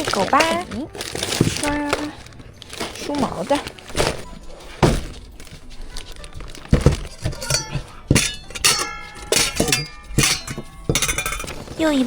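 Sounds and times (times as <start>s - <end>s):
faint background music: 0.0s - 12.0s
bowls clinking on hard surface: 6.5s - 12.0s.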